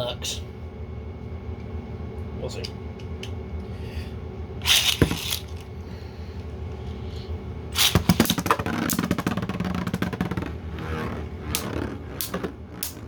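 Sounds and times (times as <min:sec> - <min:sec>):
spinning tops clashing: 0:04.6 - 0:05.6, 0:07.8 - 0:10.5
launcher ripping: 0:07.8 - 0:13.0.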